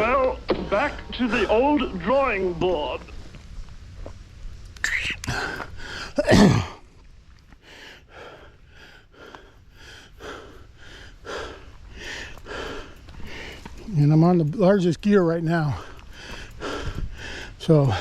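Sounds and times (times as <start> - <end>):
man panting: 5.2 - 6.3, 7.6 - 13.9, 15.6 - 18.0.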